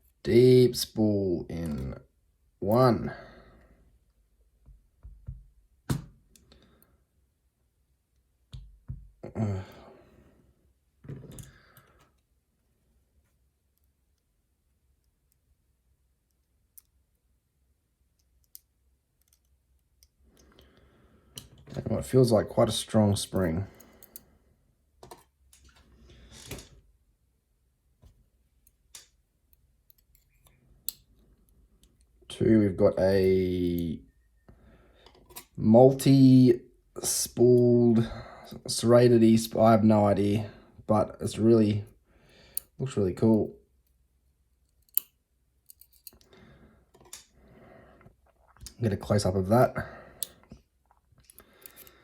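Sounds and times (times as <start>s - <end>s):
person sighing: 9.2s - 10.2s
metal lock parts clicking: 28.6s - 31.1s, 44.6s - 46.3s.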